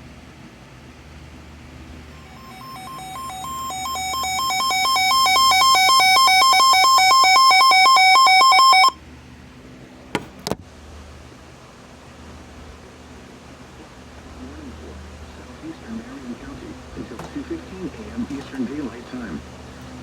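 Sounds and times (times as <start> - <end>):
alternating two-pitch alert tone: 2.2 - 9.0.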